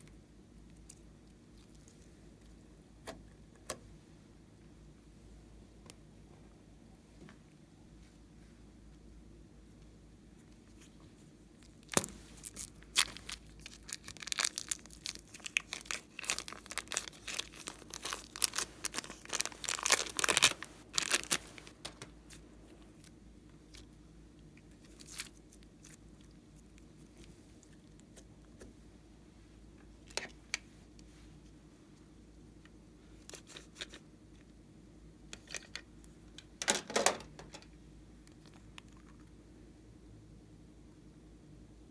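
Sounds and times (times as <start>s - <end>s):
crinkling and crunching materials: 10.5s - 23.9s, 24.6s - 28.7s.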